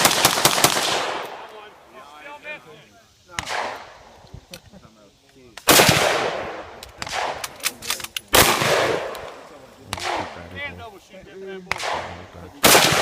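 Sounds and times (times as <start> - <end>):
fainter sharp cracks: 5.5 - 10.7, 11.7 - 13.0
gunshots with echo: 5.7 - 7.4, 8.3 - 9.3, 9.9 - 10.5, 11.7 - 13.0.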